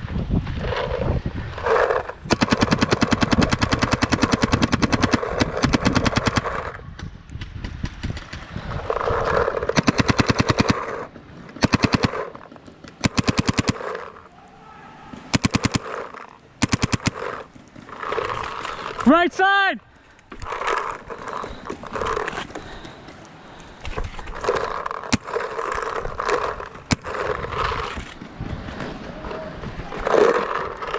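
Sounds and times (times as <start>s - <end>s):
paintball marker firing rapidly: 1.7s - 14.3s, 15.3s - 19.1s, 24.3s - 28.2s.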